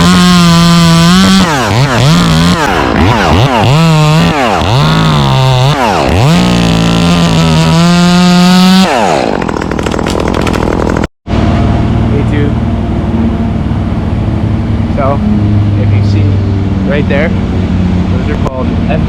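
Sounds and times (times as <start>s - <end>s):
chainsaw revving: 0.0s - 11.1s.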